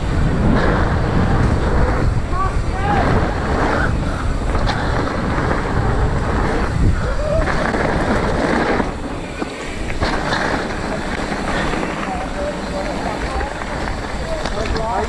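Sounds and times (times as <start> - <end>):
mountain bike rumbling on dirt: 0.0 - 15.0
wind buffeting microphone: 0.0 - 15.0.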